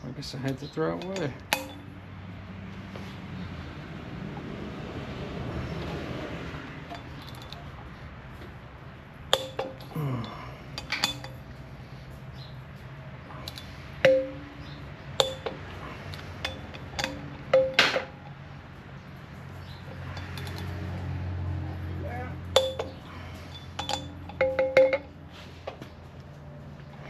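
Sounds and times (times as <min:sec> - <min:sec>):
tools clinking against metal: 0:00.4 - 0:02.0, 0:06.8 - 0:07.8, 0:09.3 - 0:11.5, 0:13.3 - 0:18.4, 0:19.8 - 0:20.8, 0:22.5 - 0:25.2.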